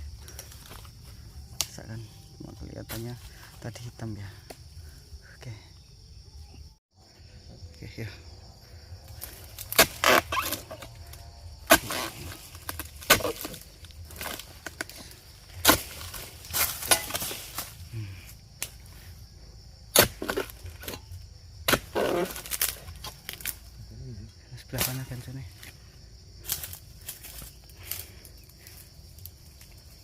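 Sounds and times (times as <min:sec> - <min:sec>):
pole chopping palm fronds: 0:09.2 - 0:10.9, 0:11.6 - 0:17.9, 0:19.9 - 0:23.6.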